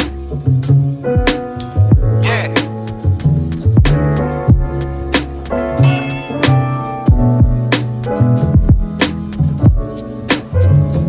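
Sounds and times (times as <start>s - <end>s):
bass line: 0.0s - 11.0s
drum hits: 1.2s - 10.5s
sustained instrumental notes: 3.9s - 8.6s.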